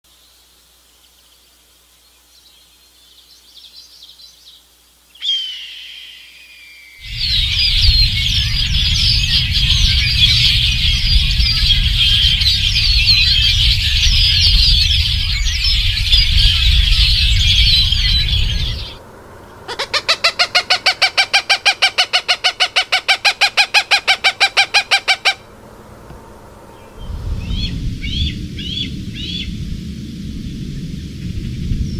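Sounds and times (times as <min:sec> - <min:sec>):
flock of birds chattering: 0:07.0 - 0:27.0
steady low rumble: 0:07.0 - 0:31.9
bird giving harsh calls: 0:19.6 - 0:25.5.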